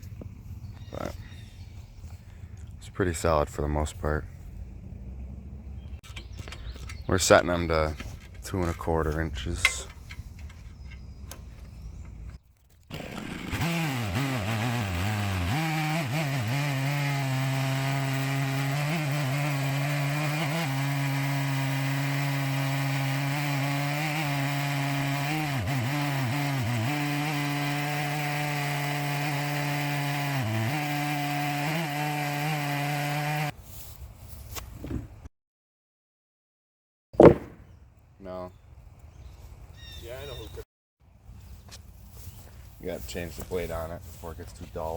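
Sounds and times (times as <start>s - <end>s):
chainsaw ripping through log: 12.8s - 33.6s.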